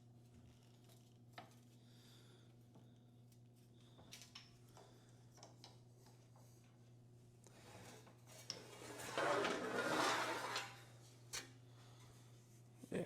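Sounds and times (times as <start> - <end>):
metal scraping rub: 8.6 - 11.5.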